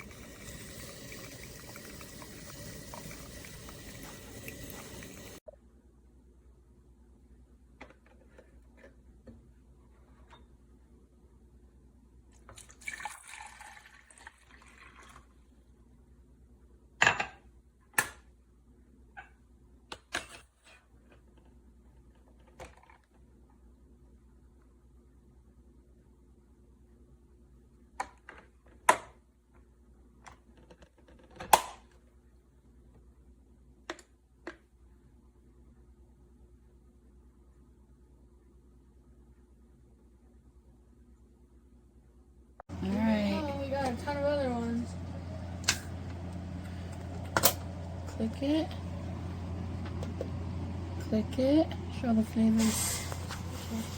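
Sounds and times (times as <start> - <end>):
water running: 0.0 - 5.4, 12.4 - 15.4, 42.7 - 53.9
faint steady hum: 0.0 - 17.8, 32.1 - 53.9.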